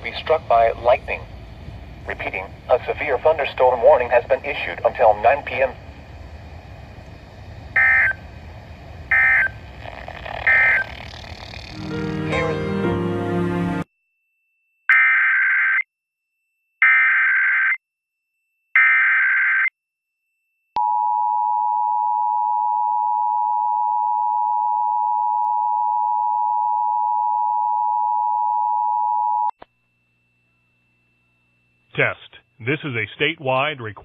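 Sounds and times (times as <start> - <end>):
data bursts: 7.7 - 8.2, 9.1 - 12.1.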